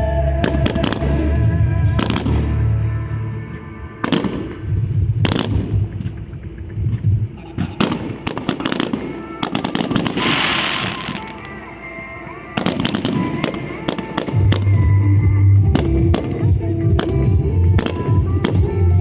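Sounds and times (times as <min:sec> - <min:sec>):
faint music: 0:00.0 - 0:19.0
fireworks booming: 0:00.4 - 0:19.0
fireworks hiss: 0:07.8 - 0:14.6.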